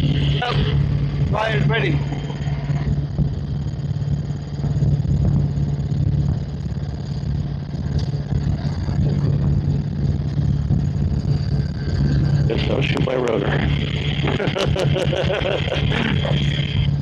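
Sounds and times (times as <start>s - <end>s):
helicopter engine and rotor drone: 0.0s - 17.0s.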